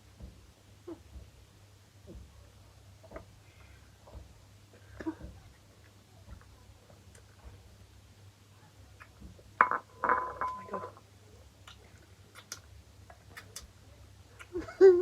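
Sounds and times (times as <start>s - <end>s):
clinks of dishes: 9.6s - 11.0s.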